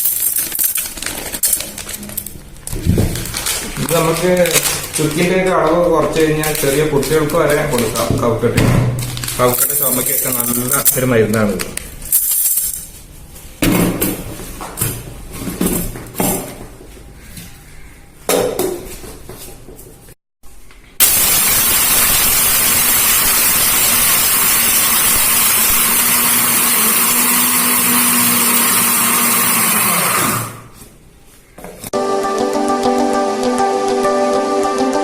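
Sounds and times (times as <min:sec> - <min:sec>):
mixer grinder running: 0:21.0 - 0:30.8.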